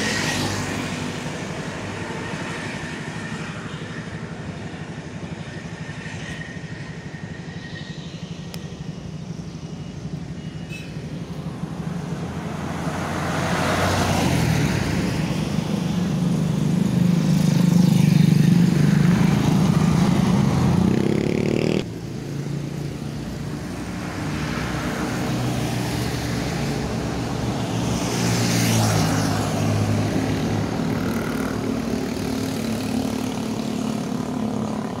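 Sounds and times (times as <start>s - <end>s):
vehicle passing: 11.2s - 35.0s
engine revving: 18.7s - 22.0s.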